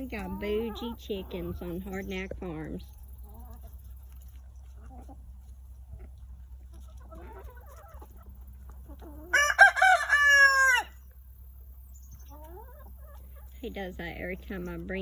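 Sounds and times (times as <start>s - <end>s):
hen clucking: 0.0s - 15.0s
rooster crowing: 9.3s - 11.0s.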